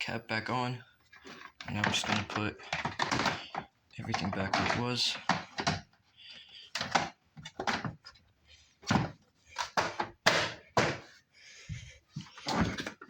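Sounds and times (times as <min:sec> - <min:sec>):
sharp knocks and clunks: 0:08.8 - 0:13.0.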